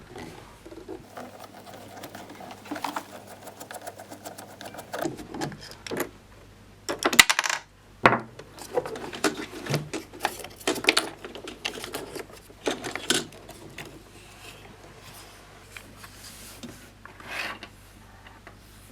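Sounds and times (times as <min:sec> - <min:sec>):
plastic and metal parts clattering: 0:00.7 - 0:06.1, 0:08.6 - 0:14.6.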